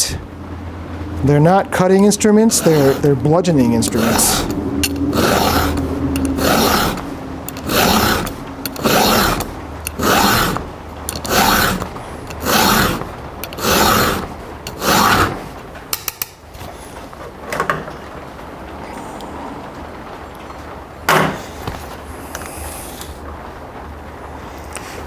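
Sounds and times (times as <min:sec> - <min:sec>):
file rasping on chain: 0:01.4 - 0:15.5.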